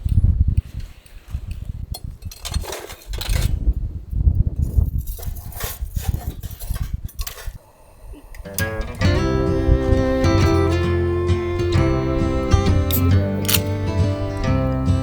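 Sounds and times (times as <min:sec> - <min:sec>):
wind buffeting microphone: 0:00.0 - 0:07.2.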